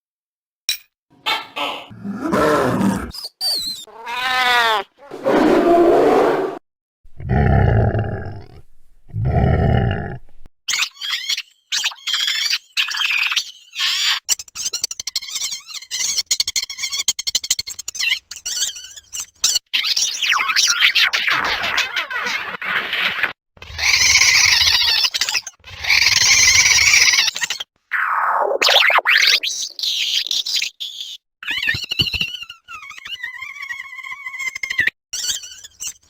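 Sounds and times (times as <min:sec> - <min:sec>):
creature low growls: 0:01.9 - 0:03.2, 0:05.0 - 0:10.4.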